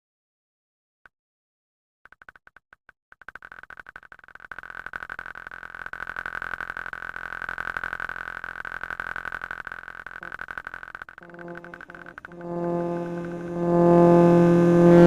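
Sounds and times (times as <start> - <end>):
fart sound effect: 3.3 - 15.0.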